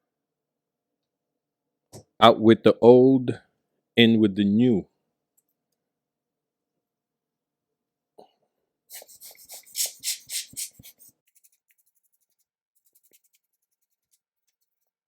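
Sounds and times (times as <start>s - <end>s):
scratchy strokes: 8.9s - 15.0s.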